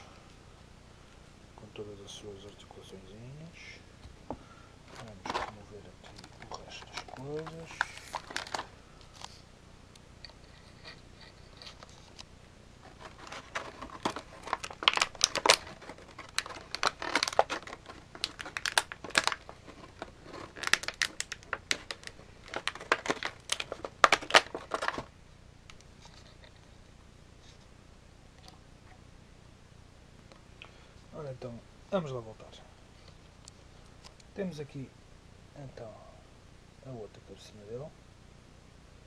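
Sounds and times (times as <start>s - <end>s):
packaging crinkling: 4.9s - 9.4s, 10.2s - 25.1s.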